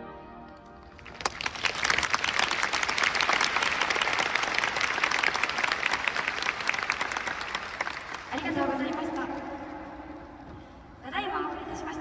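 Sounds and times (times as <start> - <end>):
audience applauding: 0.8 - 10.3.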